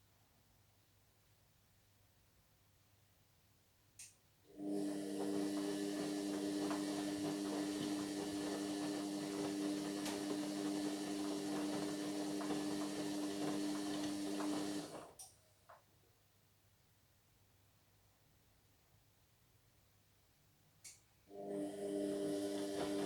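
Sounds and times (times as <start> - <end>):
washing machine humming: 4.5 - 15.2, 21.3 - 23.0.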